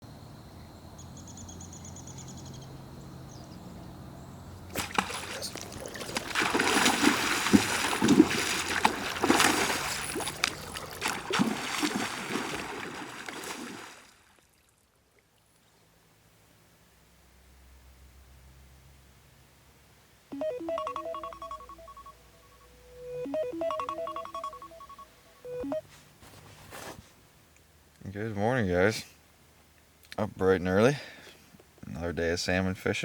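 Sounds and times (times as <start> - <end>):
water splashing hard: 4.7 - 14.2.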